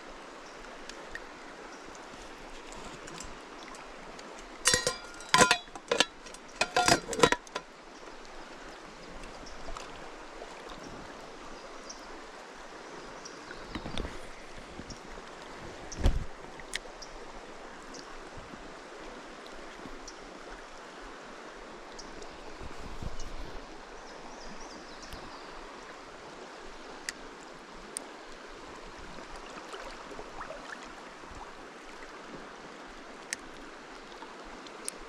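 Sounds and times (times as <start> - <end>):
stream water running: 0.0 - 35.0
faint clicks: 0.8 - 1.3.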